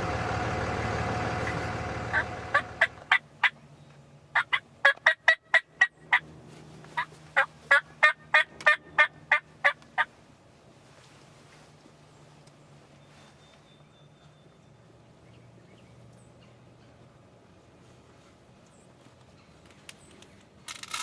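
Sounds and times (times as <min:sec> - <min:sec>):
vehicle engine running: 0:00.0 - 0:03.2
turkey yelping: 0:02.0 - 0:03.6, 0:04.4 - 0:06.2, 0:07.0 - 0:10.1.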